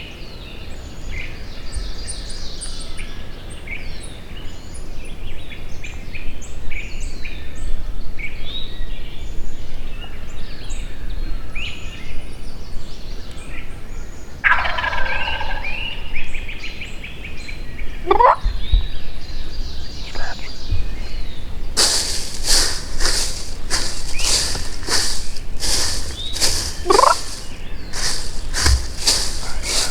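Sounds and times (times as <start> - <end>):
songbirds chirping: 21.8 - 29.9.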